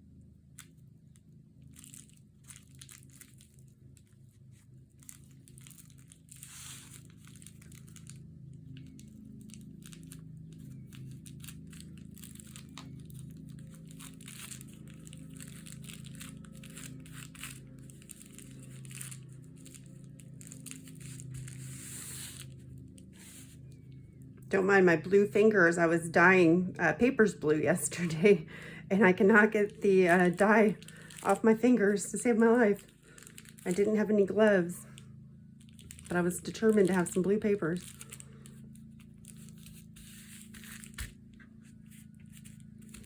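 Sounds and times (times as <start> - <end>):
steady low hum: 0.0 - 43.0
paper and plastic crinkling: 1.7 - 23.7, 29.6 - 34.0, 35.6 - 43.0.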